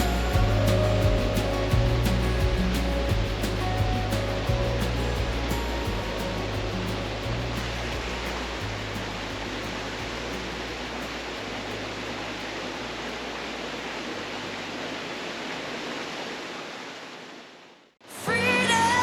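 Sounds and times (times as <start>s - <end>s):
music: 0.0s - 12.6s, 18.3s - 19.0s
waterfall rushing: 0.0s - 17.3s.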